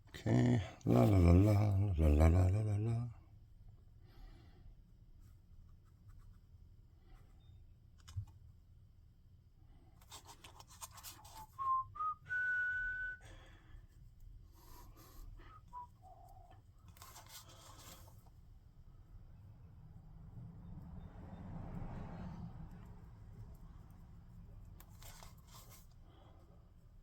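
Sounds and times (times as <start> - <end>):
man whistling softly: 11.3 - 13.6, 15.4 - 16.6.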